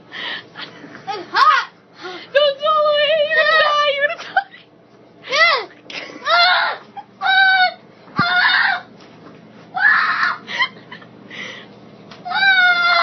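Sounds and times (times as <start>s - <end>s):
shrill high-pitched cries: 6.3s - 8.9s, 12.3s - 13.0s.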